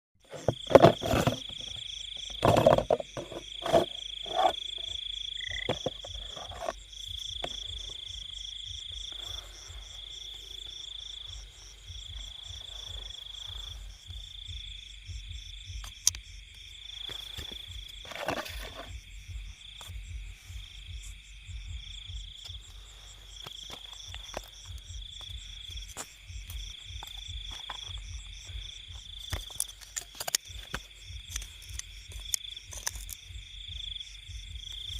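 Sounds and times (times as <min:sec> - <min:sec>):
insects trilling: 0:00.2 - 0:34.9
frog croaks: 0:00.4 - 0:16.4
fast pulsing insect chirp: 0:00.5 - 0:34.9.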